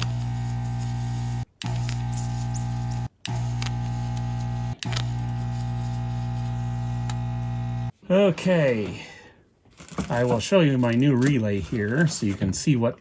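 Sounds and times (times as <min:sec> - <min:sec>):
desoldering gun vacuum pump buzzing: 0:00.0 - 0:07.9.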